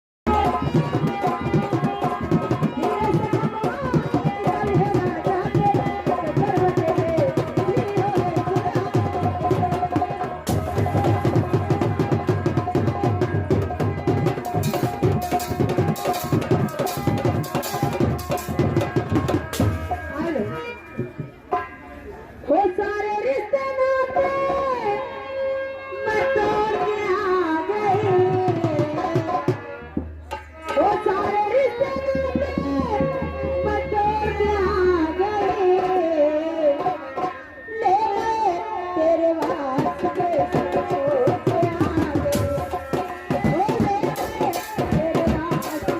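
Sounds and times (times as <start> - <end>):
fast hand-drum rhythm: 0.3 - 21.6, 28.0 - 35.1, 39.4 - 45.9.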